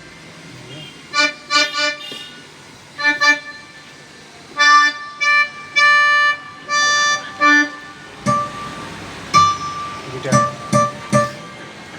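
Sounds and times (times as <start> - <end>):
electronic keyboard single notes: 3.0 - 11.9.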